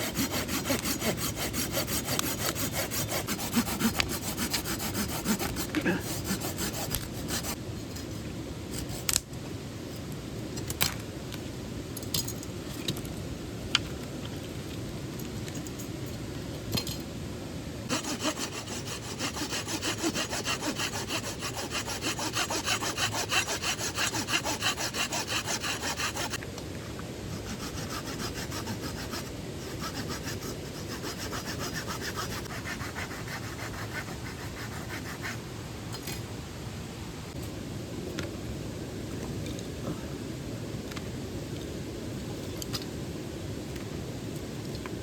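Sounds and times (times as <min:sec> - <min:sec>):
hand saw cutting wood: 0:00.0 - 0:07.6, 0:17.9 - 0:26.4, 0:27.4 - 0:35.4.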